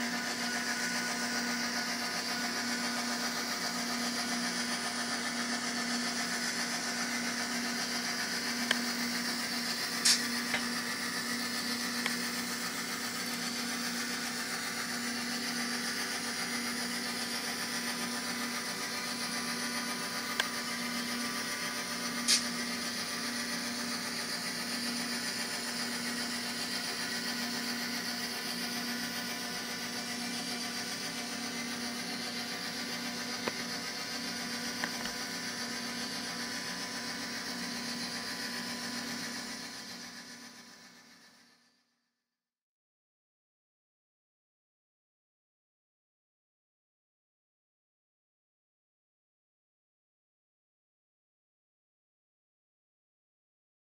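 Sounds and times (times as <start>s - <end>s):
model locomotive diesel engine sound: 0.0s - 41.8s.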